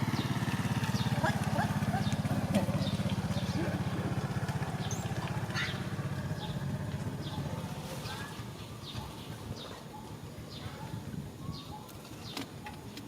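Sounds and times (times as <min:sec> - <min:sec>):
vehicle engine running: 0:00.0 - 0:09.2.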